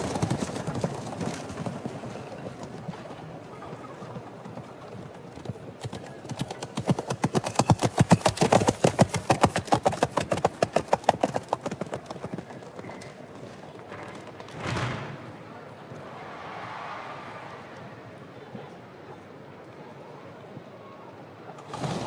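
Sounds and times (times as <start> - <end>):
horse hooves clip-clopping: 0.0 - 14.6.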